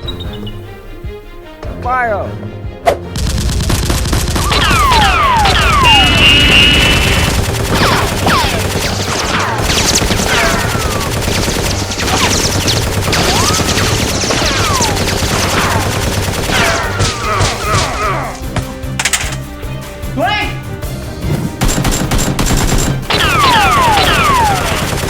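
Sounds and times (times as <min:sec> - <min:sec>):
automatic gunfire: 0:03.2 - 0:17.8, 0:21.6 - 0:25.0.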